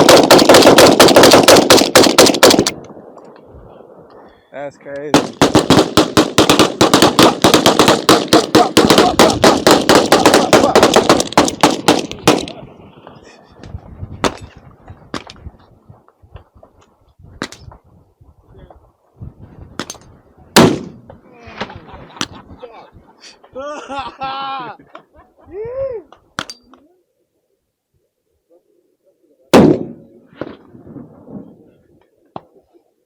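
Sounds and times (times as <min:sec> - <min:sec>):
guns firing rapidly: 0:00.0 - 0:02.8, 0:05.1 - 0:12.6, 0:20.6 - 0:21.0
single gunshots: 0:05.1 - 0:12.6, 0:20.6 - 0:21.0, 0:29.5 - 0:30.6.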